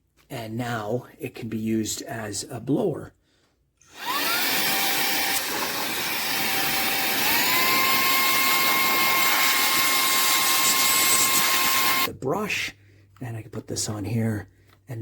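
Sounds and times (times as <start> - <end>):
handheld vacuum motor whine: 3.9 - 12.1.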